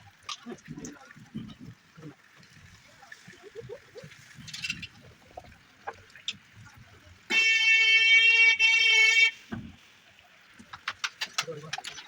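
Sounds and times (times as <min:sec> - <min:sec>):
vehicle horn honking: 0:07.3 - 0:09.4.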